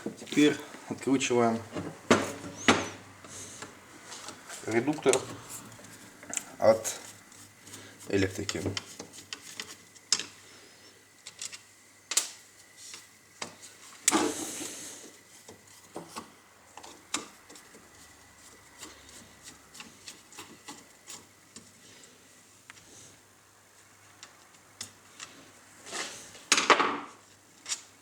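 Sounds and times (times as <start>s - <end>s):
scraping rub: 3.3s - 9.9s, 14.1s - 21.3s.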